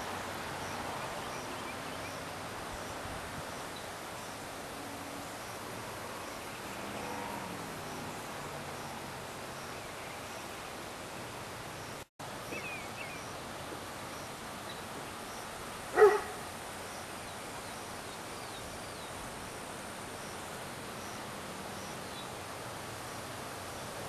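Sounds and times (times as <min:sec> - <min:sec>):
background hiss: 0:00.0 - 0:24.0
dog bark: 0:15.9 - 0:16.4.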